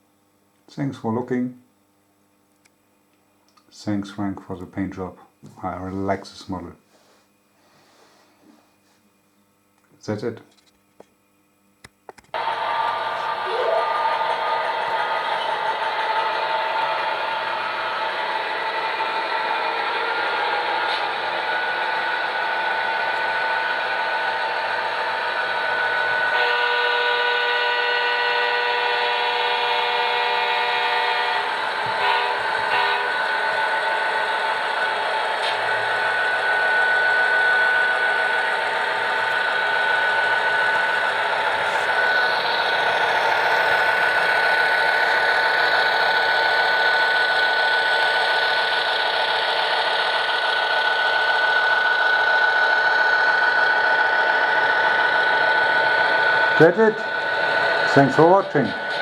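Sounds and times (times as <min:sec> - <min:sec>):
model diesel engine running: 0:12.4 - 0:59.0
locomotive horn blast: 0:26.2 - 0:33.3.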